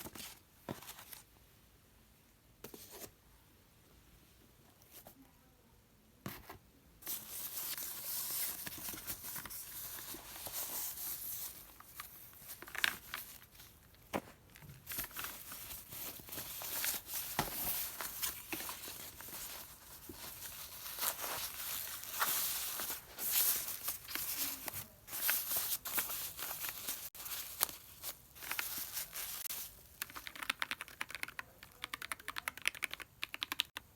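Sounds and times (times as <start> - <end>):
packaging rustling and crinkling: 7.0 - 30.4.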